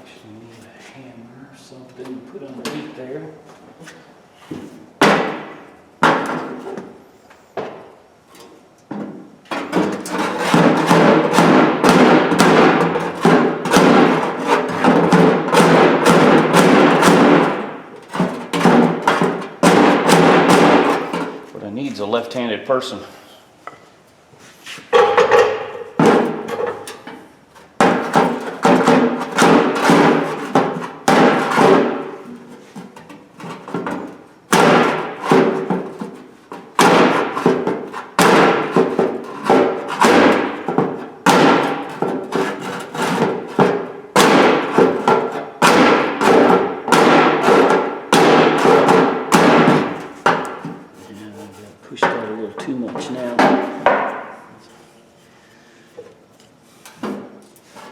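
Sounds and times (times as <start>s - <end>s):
hammer blows on sheet steel: 10.2s - 21.3s, 27.8s - 32.2s, 33.8s - 36.0s, 36.6s - 50.6s.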